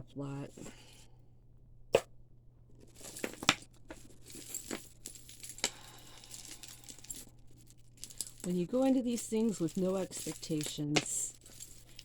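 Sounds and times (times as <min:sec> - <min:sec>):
crinkling: 0:02.7 - 0:12.0
jewelry clicking and rattling: 0:02.8 - 0:12.0.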